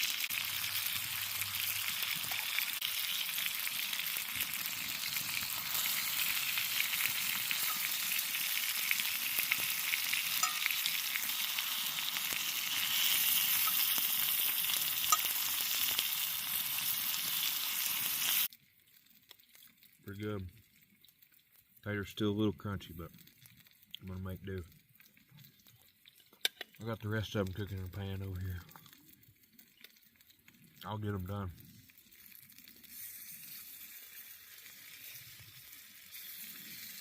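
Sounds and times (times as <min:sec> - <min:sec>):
potatoes sizzling in a pan: 0:00.0 - 0:18.5, 0:30.9 - 0:37.0.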